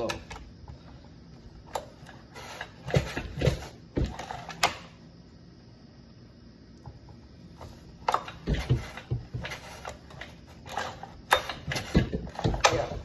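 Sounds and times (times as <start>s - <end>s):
hard objects knocking and clunking: 2.8s - 4.7s, 8.0s - 13.0s.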